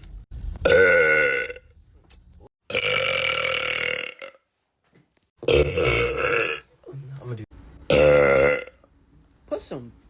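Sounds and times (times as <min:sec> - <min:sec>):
men burping: 0:00.7 - 0:01.6, 0:02.7 - 0:04.4, 0:05.4 - 0:06.7, 0:07.9 - 0:08.8.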